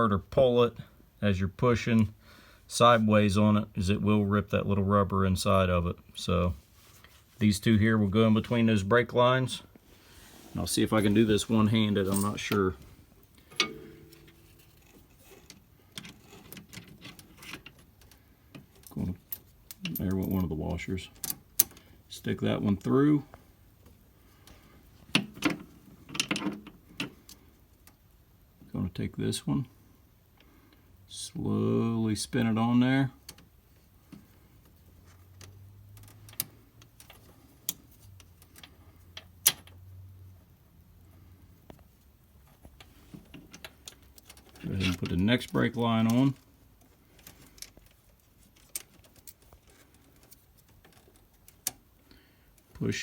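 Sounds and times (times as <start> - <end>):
faint low hum: 0.0 - 53.0.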